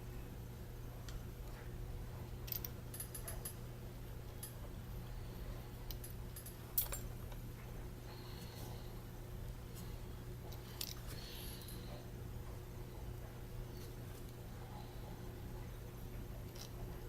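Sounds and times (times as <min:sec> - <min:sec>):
low electrical hum: 0:00.0 - 0:17.0
small tools clicking and tapping: 0:02.5 - 0:03.6, 0:05.9 - 0:07.4.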